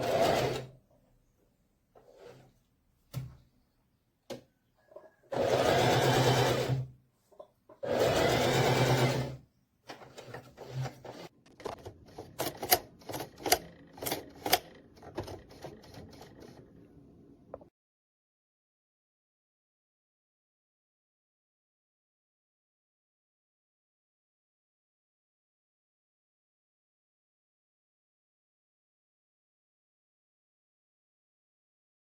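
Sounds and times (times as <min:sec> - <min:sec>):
electric sewing machine running: 0:05.4 - 0:06.8, 0:07.8 - 0:09.4.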